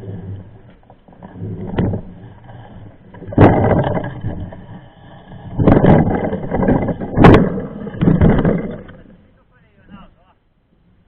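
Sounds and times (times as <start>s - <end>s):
mountain bike rattling: 0.0s - 9.3s
loud clattering knocks: 1.2s - 4.8s, 5.4s - 9.1s.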